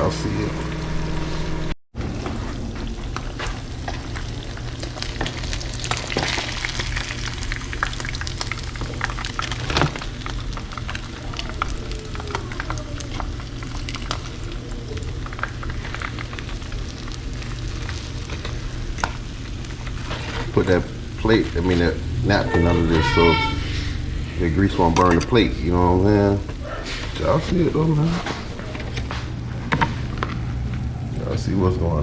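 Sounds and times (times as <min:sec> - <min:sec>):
low hum: 0:00.0 - 0:25.0
food sizzling in a pan: 0:00.3 - 0:24.8
grease popping and crackling: 0:02.0 - 0:22.4.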